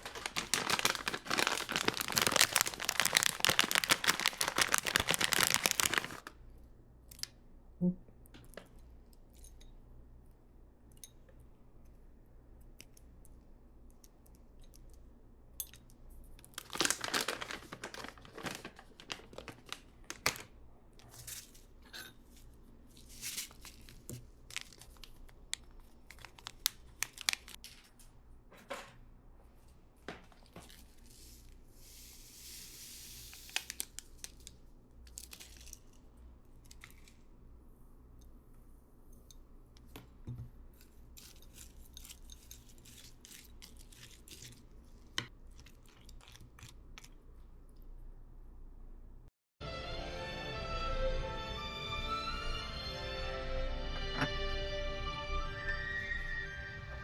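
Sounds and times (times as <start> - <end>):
material crinkling and rustling: 0.0 - 6.3, 16.4 - 28.0
soft hiss: 31.0 - 34.3.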